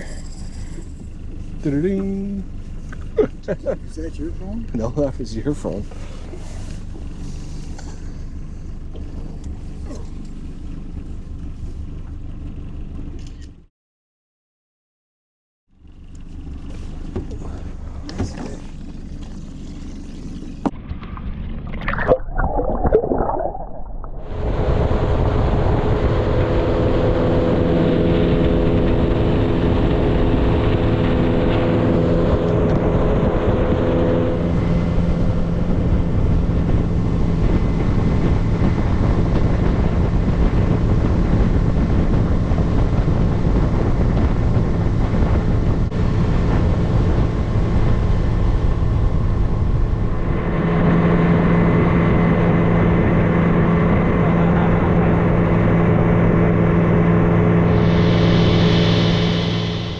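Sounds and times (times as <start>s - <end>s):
outboard motor running: 0.0s - 13.5s, 15.7s - 59.9s
wind noise on microphone: 24.1s - 59.9s.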